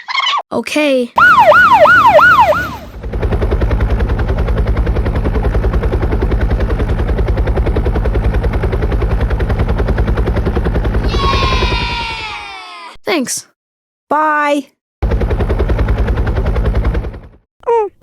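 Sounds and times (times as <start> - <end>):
siren-like wail: 1.2 - 3.0, 11.0 - 12.6.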